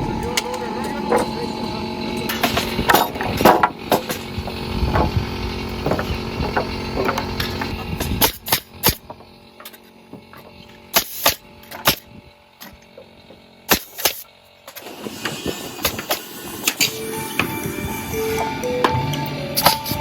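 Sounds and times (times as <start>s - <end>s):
music: 15.1s - 20.0s.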